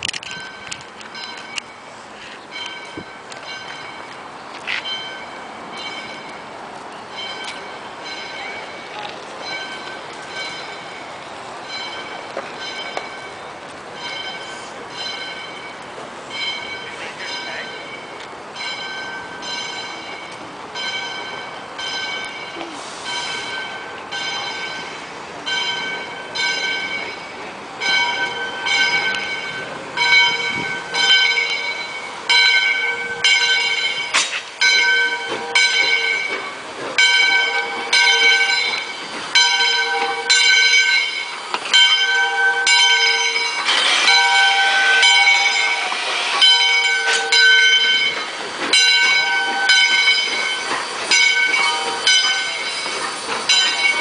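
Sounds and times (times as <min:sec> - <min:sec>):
locomotive bell ringing: 0:00.0 - 0:54.0
steam hissing: 0:22.6 - 0:23.9, 0:43.0 - 0:54.0.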